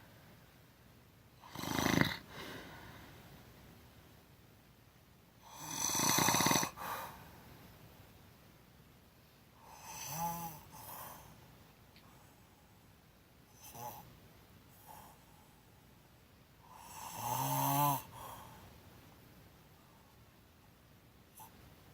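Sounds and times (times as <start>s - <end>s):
person snoring: 1.4s - 2.8s, 5.4s - 6.8s.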